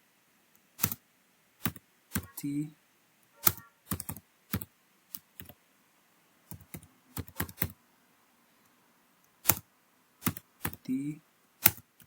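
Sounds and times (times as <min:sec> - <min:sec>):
keyboard typing: 0:00.8 - 0:01.0, 0:01.6 - 0:02.5, 0:03.4 - 0:05.6, 0:06.5 - 0:07.8, 0:09.4 - 0:11.0, 0:11.6 - 0:12.0.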